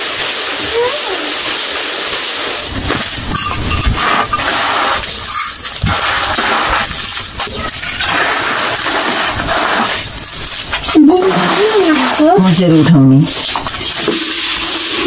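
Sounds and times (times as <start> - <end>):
rice and water swishing: 0.0 - 15.0
clinks against metal pot: 3.3 - 4.6.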